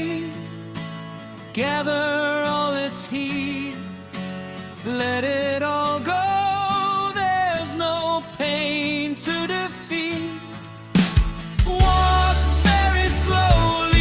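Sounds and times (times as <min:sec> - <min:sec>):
instrumental accompaniment: 0:10.9 - 0:14.0
person singing with long held notes: 0:11.6 - 0:14.0.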